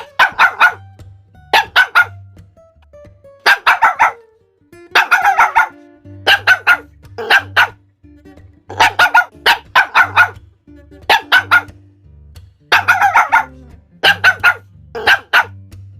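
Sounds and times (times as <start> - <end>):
dog barking: 0.0 - 0.8, 1.5 - 2.2, 3.4 - 4.2, 5.0 - 7.8, 8.7 - 10.4, 11.1 - 11.7, 12.7 - 15.6
low electronic music: 0.0 - 15.9.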